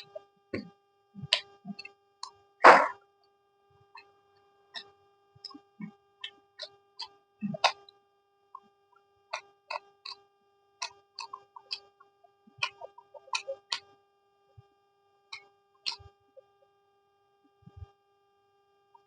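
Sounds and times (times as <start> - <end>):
faint steady hum: 0.0 - 19.0
eating clicks and crunches: 4.7 - 7.9, 9.3 - 10.2, 10.8 - 13.9, 15.3 - 16.1.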